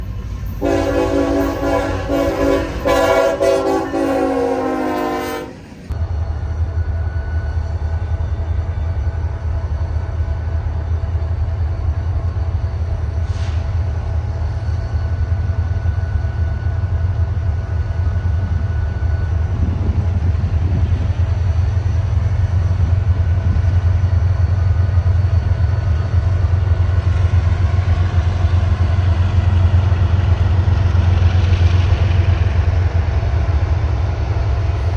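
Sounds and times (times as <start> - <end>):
diesel locomotive rumbling: 0.0 - 34.9
locomotive air horn chord: 0.6 - 5.9.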